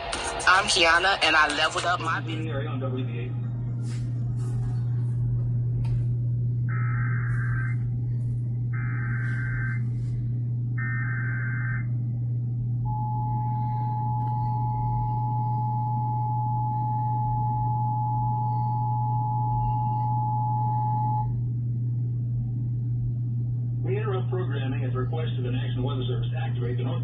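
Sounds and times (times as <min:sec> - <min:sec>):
steady low hum: 0:00.0 - 0:27.0
two-tone attention signal: 0:06.7 - 0:07.8, 0:08.8 - 0:09.8
warbling data header bursts: 0:06.7 - 0:08.0, 0:08.6 - 0:10.0, 0:10.7 - 0:12.1.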